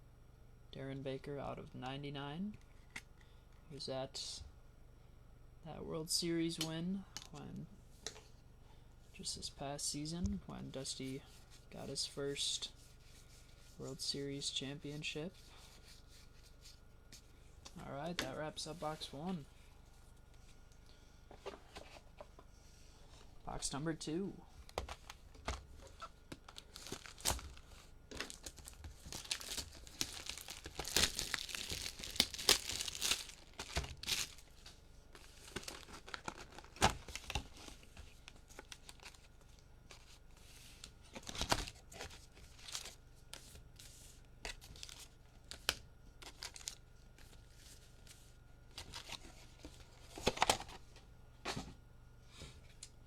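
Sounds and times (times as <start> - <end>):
plastic wrap tearing and crinkling: 26.0 - 39.2, 44.5 - 46.8.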